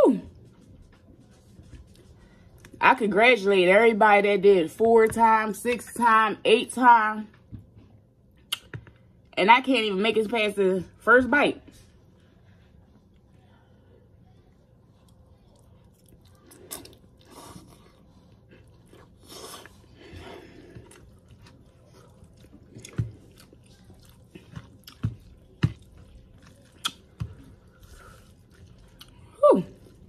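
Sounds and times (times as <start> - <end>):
wet mouth clicks and smacks: 8.5 - 8.7, 26.8 - 27.0
slurping and chewing noodles: 15.0 - 30.0.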